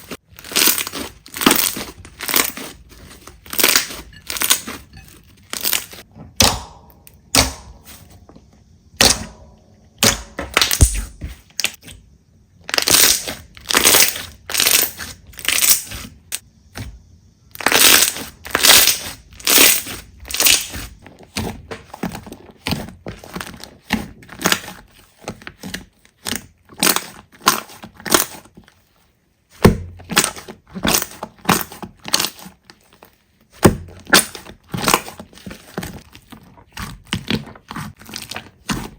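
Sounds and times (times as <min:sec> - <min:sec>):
slime squished by hand: 0:00.0 - 0:04.8.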